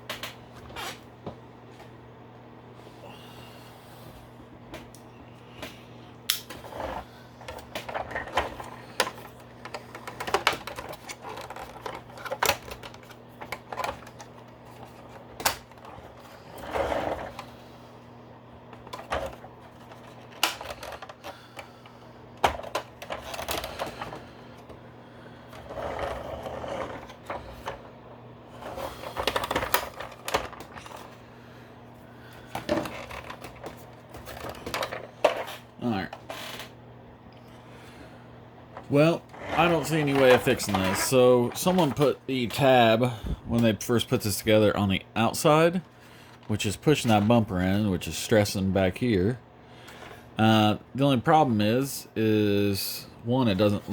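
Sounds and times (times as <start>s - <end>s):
plastic parts clicking and clattering: 7.4s - 16.3s, 18.7s - 21.7s, 22.4s - 24.2s, 28.6s - 31.1s, 32.5s - 36.7s.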